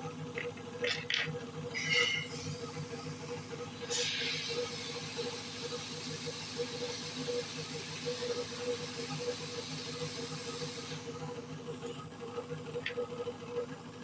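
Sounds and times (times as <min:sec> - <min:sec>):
rushing air hiss: 0:03.8 - 0:07.3.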